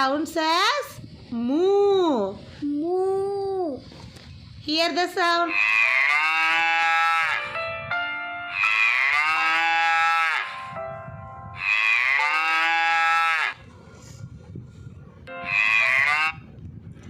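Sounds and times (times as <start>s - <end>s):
cow mooing: 5.5s - 7.6s, 8.5s - 10.7s, 11.6s - 13.7s, 15.3s - 16.4s.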